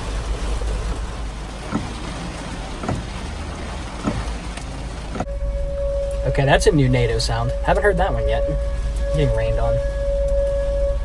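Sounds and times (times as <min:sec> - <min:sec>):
heavy rain: 0:00.0 - 0:05.4
sharp taps: 0:00.9 - 0:05.3.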